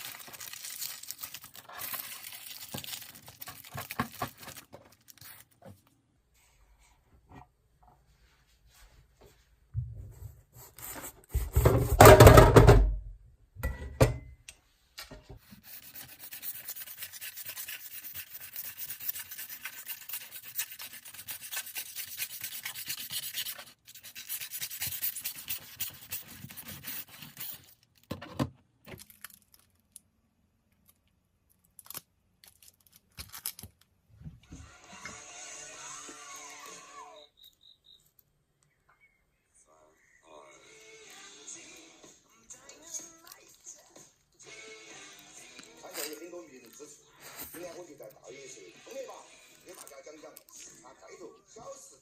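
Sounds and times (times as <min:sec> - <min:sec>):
rubbing and scraping: 0:15.2 - 0:27.9.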